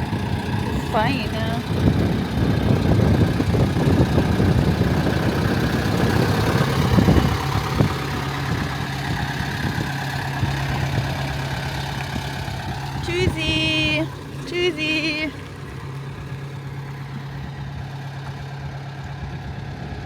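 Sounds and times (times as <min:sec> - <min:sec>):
van engine running: 0:00.0 - 0:20.0.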